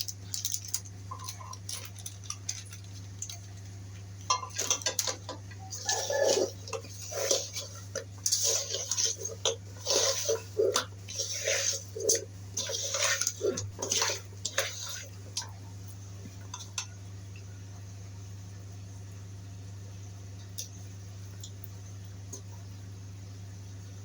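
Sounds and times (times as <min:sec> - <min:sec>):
low steady hum: 0:00.0 - 0:24.0
wet squishing of mixing by hand: 0:00.1 - 0:17.4.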